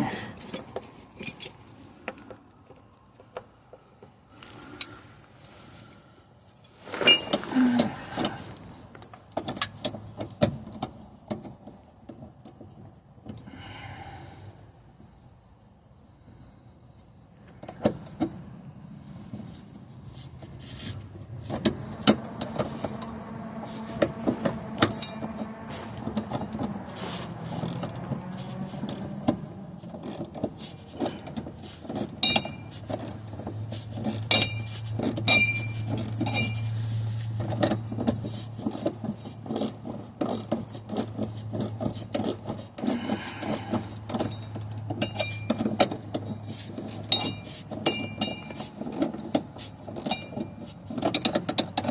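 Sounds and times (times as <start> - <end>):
ringing metallic chinks: 7.0 - 7.4, 24.9 - 25.6, 32.2 - 32.7, 34.2 - 34.7, 35.3 - 36.6, 44.3 - 45.6, 47.1 - 48.6, 50.0 - 50.6
metal hand tools clinking: 32.0 - 33.2, 44.2 - 45.7.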